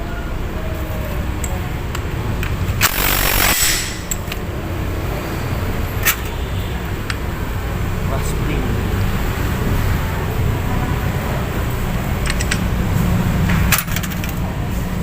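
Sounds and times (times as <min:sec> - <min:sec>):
hissing rattling burst: 0:02.8 - 0:04.3
metallic clicks of hand tools: 0:12.2 - 0:12.7.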